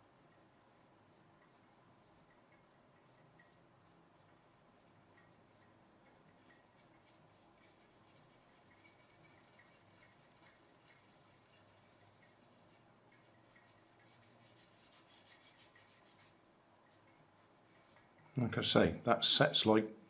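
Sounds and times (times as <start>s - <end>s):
faint scratchy rubbing: 0.6s - 19.8s.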